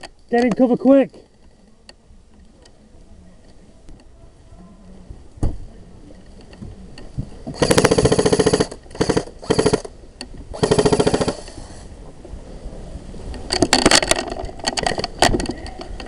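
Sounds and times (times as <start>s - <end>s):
airsoft rifle firing bursts: 7.6s - 9.9s, 10.6s - 11.5s.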